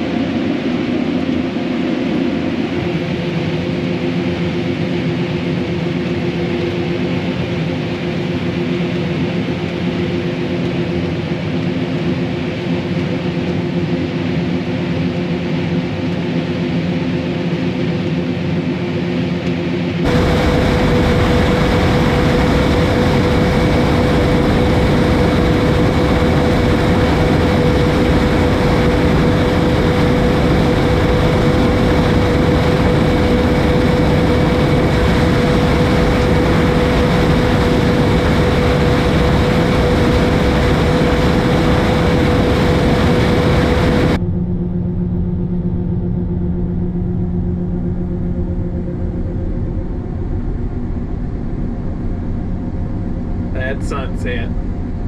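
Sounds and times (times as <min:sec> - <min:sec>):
steady machine whine: 0:00.0 - 0:55.0
combine harvester running: 0:20.0 - 0:48.8.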